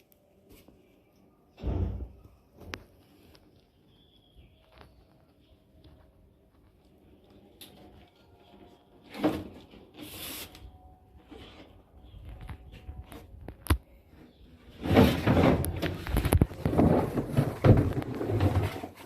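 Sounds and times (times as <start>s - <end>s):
clattering and rubbing: 14.7s - 19.0s
handling knocks and scrapes: 14.7s - 19.0s.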